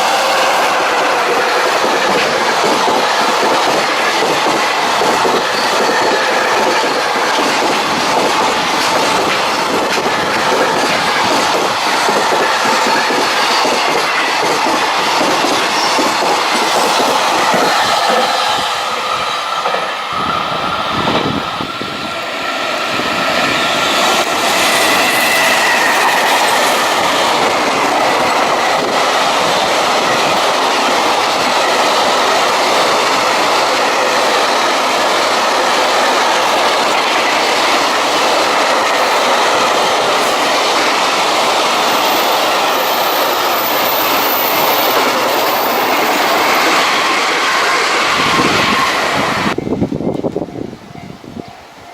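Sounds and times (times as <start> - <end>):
freight train rolling on rails: 0.0 - 51.9.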